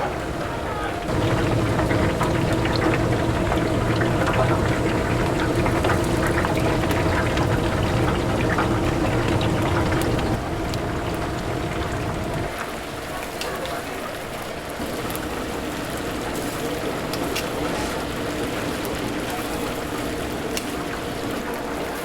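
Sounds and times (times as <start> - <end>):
steady machine hum: 0.1 - 12.6
chicken deep-frying in oil: 0.7 - 22.0.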